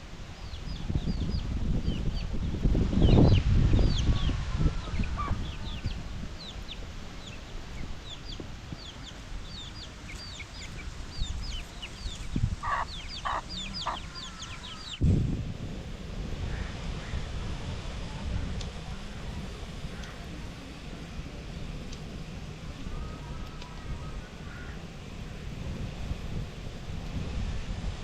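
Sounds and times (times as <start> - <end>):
chickens cheeping: 4.0 - 6.0, 8.1 - 15.0
chickens clucking: 4.1 - 6.7, 7.7 - 15.0.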